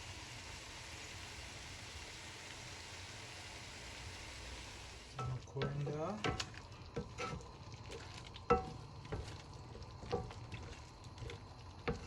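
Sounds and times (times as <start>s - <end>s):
faint sizzling: 0.0s - 12.0s
spoon clinking on pot: 5.2s - 7.4s, 8.5s - 9.3s
spoon stirring sauce in pot: 5.2s - 12.0s.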